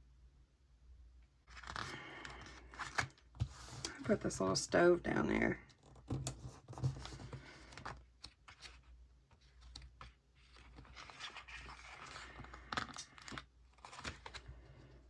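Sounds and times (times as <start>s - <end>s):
paper sticker sheets crinkling: 7.0s - 14.6s.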